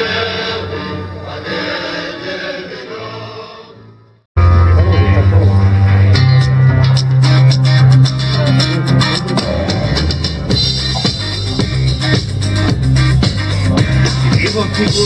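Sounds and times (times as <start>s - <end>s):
bass: 4.4s - 15.0s
drum kit beat: 4.4s - 15.0s
guitar: 4.4s - 15.0s.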